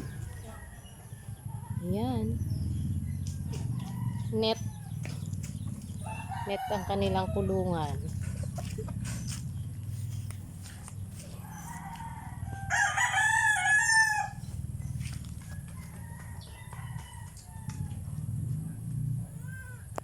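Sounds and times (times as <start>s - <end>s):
faint chicken calls: 2.8s - 20.0s
rooster crowing: 6.0s - 7.8s, 11.3s - 14.6s, 15.4s - 18.4s.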